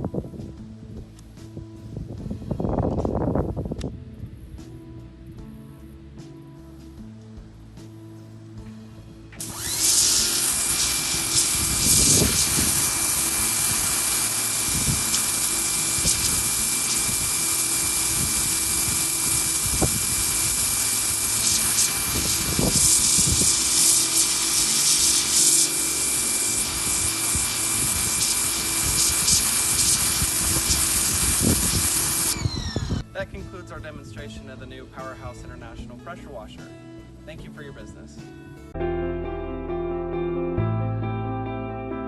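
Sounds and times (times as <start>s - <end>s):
pressure washer water jet hissing: 9.4s - 33.0s.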